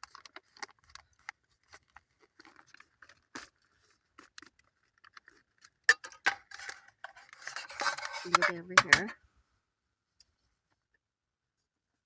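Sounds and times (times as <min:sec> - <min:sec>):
food pouch crinkling: 0:00.0 - 0:06.8.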